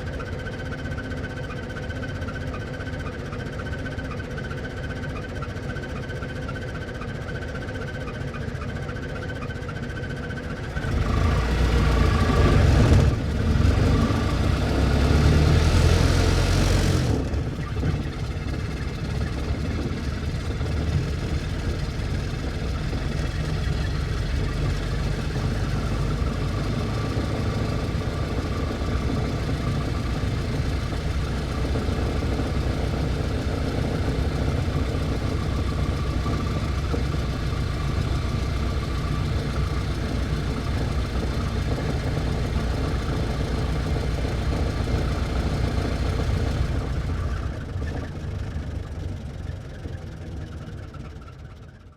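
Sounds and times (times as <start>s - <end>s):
car engine revving and idling: 10.5s - 51.9s.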